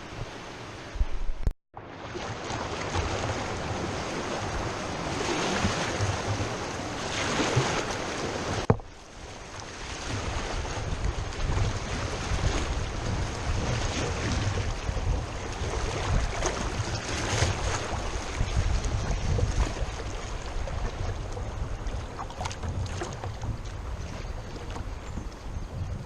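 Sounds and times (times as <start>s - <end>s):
river water rushing around kayak: 0.0s - 26.0s
wind buffeting microphone: 3.0s - 26.0s.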